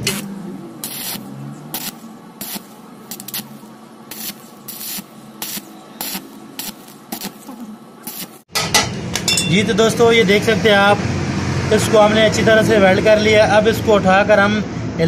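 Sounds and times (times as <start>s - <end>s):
arc welding crackling bursts: 0.0s - 8.5s.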